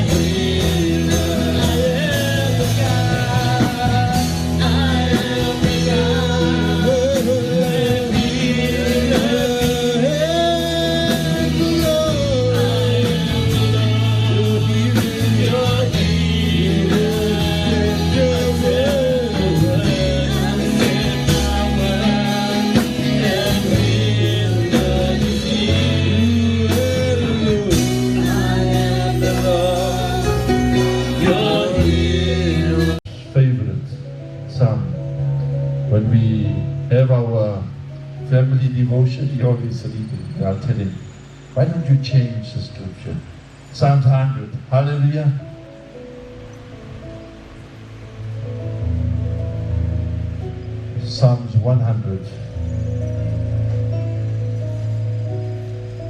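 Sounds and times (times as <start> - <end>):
person singing over a band: 0.0 - 33.2
held bass notes: 0.0 - 56.0.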